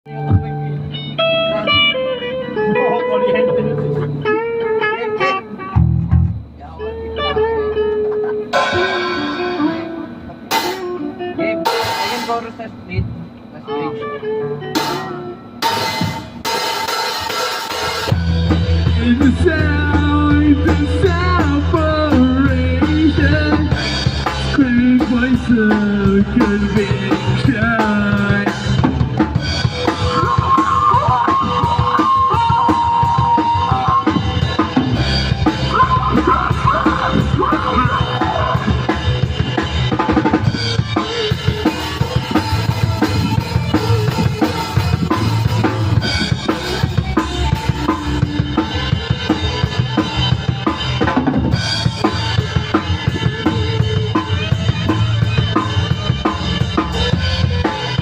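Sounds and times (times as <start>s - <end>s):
drum kit beat: 0.1s - 13.4s, 14.5s - 58.0s
rock band playing: 0.1s - 58.0s.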